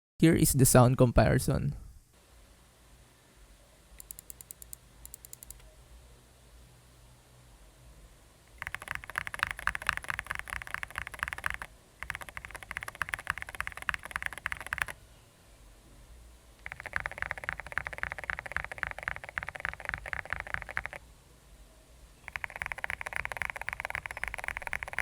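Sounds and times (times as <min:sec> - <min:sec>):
mechanical keyboard keys clacking: 0:04.0 - 0:05.7, 0:08.5 - 0:15.0, 0:16.6 - 0:21.0, 0:22.2 - 0:25.0.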